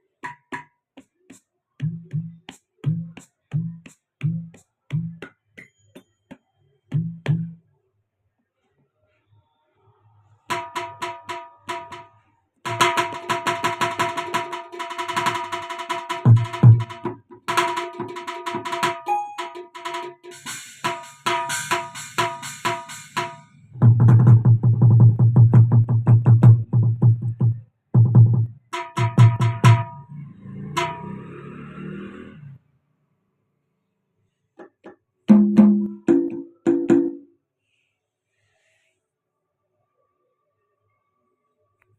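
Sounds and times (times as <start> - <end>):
ringing pitched percussion strikes: 30.8 - 31.2.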